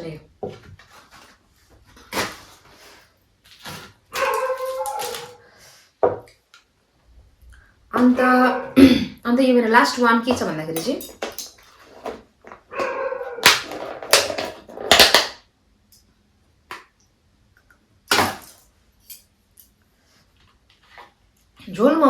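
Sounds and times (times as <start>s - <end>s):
plastic rustling: 0.5s - 5.6s.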